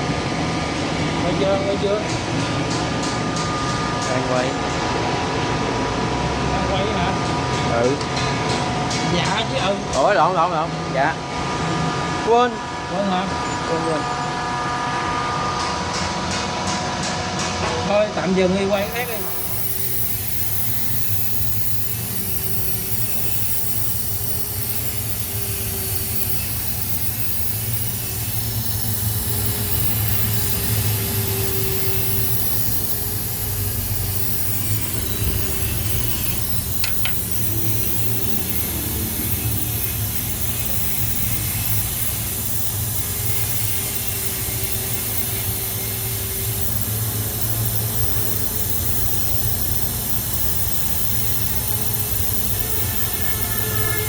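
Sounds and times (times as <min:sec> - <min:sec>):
steady mechanical hum: 0:00.0 - 0:54.0
constant hiss: 0:18.7 - 0:54.0.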